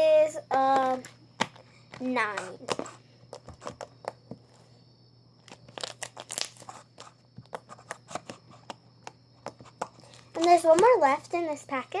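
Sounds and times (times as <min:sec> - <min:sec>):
slime crackling and popping: 0:05.5 - 0:06.7.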